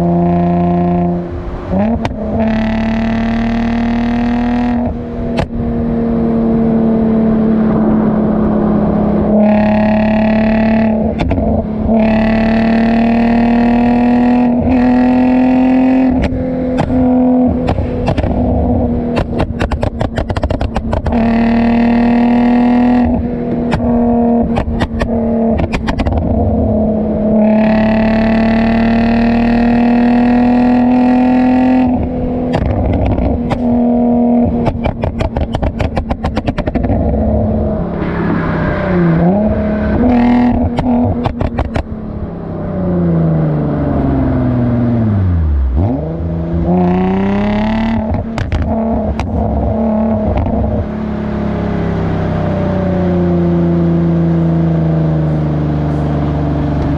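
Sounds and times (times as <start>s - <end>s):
car exhaust at steady revs: 0.0s - 56.9s
exhaust crackles and pops: 16.1s - 21.4s, 23.0s - 26.5s, 31.8s - 37.3s, 40.0s - 42.0s, 47.0s - 50.9s.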